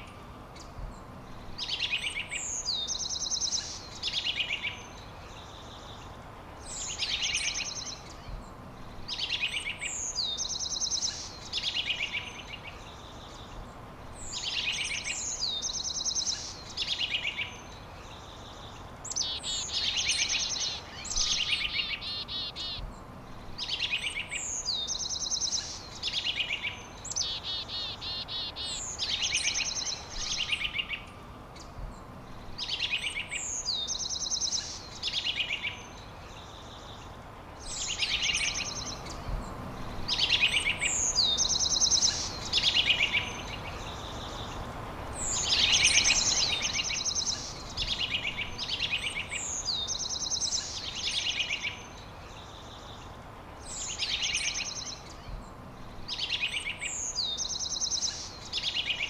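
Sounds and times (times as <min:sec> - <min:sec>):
songbird trilling: 0:37.6 - 0:52.7.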